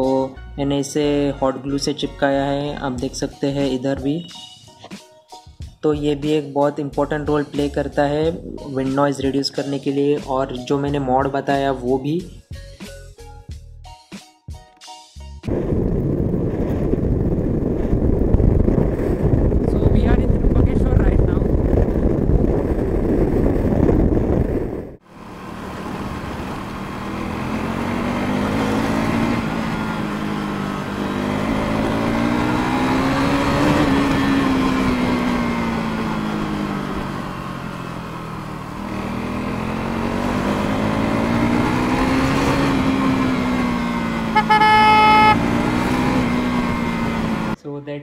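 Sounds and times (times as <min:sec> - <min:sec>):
vehicle horn honking: 0:44.4 - 0:45.7.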